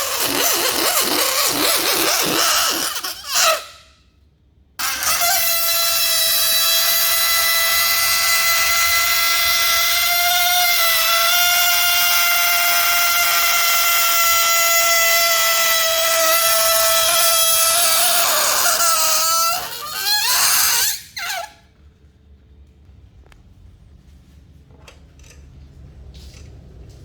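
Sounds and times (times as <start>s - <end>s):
balloon deflating squeal: 0.0s - 3.9s, 4.8s - 21.6s.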